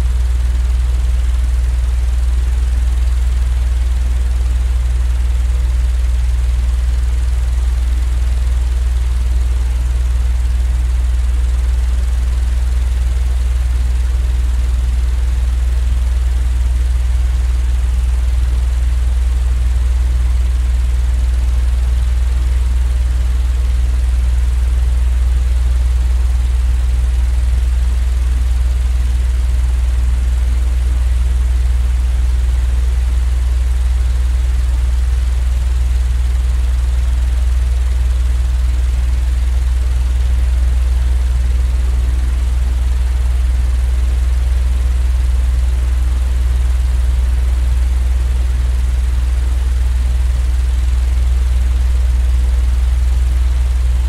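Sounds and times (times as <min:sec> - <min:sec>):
low droning hum: 0:08.1 - 0:13.4, 0:51.5 - 0:54.0.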